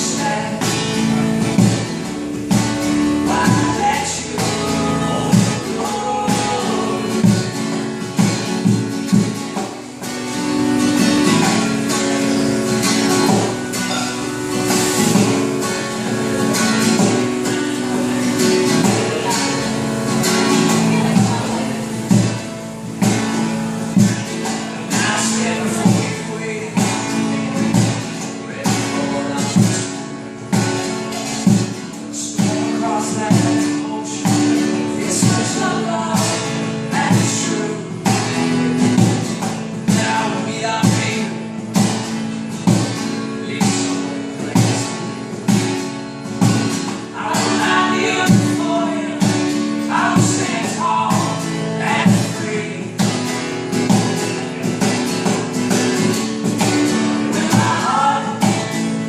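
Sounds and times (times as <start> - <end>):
person singing: 0.0 - 1.8, 3.1 - 8.0, 16.2 - 30.1, 32.0 - 38.6, 47.0 - 53.0, 56.6 - 59.0
guitar: 0.0 - 59.0
steady percussive beat: 0.2 - 33.7.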